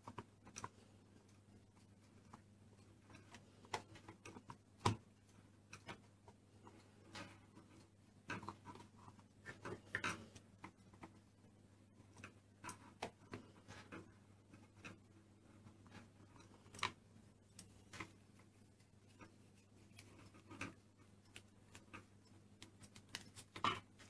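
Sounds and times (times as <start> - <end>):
plastic moulds clicking and tapping: 0.0 - 24.0.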